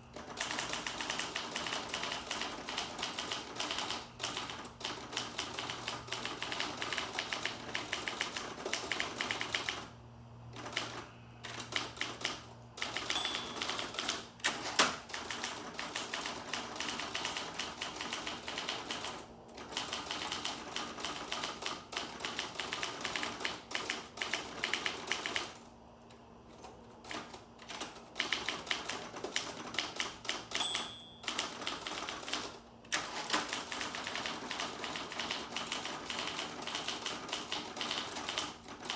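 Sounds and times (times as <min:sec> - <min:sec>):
typewriter typebars clattering: 0:00.2 - 0:09.9, 0:10.6 - 0:25.6, 0:27.1 - 0:38.9
typewriter margin bell ringing: 0:12.8 - 0:14.6, 0:30.4 - 0:32.0.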